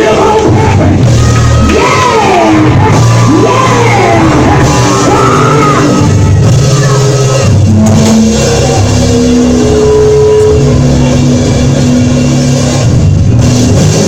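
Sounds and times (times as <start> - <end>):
person shouting a sermon: 0.0 - 7.2
church band music: 0.0 - 14.0.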